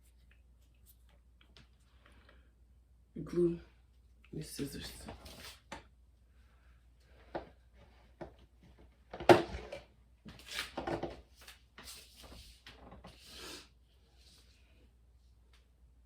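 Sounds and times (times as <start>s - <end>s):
rustling and handling noise: 0.0s - 2.4s, 4.7s - 5.8s, 7.0s - 15.7s.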